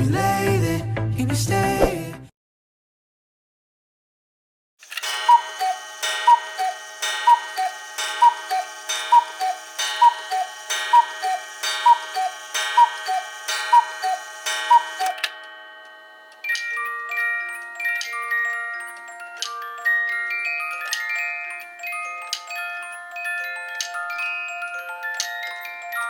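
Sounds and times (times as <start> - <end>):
clock mechanism clicking: 4.8 - 16.7
cuckoo clock call: 4.8 - 26.0.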